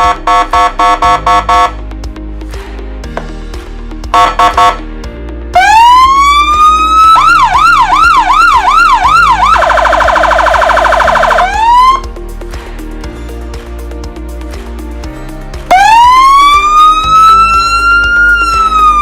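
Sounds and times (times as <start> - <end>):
electronic siren cycling tones: 5.6 - 12.0, 15.7 - 19.0.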